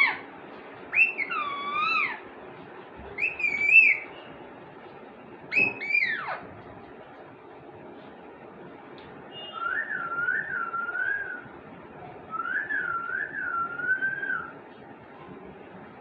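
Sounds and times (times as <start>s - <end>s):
parrot whistling calls: 0.9s - 2.2s, 3.2s - 4.2s, 5.5s - 6.5s, 9.4s - 11.5s, 12.3s - 14.6s.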